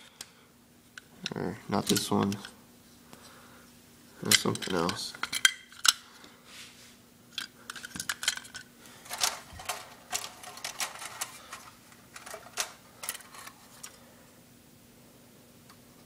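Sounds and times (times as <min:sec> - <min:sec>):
toy train parts clicking: 0:07.4 - 0:14.0.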